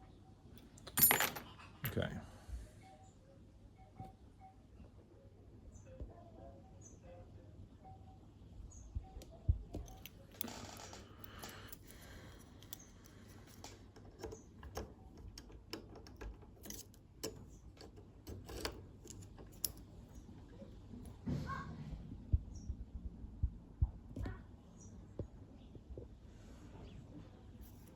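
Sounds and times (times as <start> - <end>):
tool scraping in lock: 9.8 - 19.9.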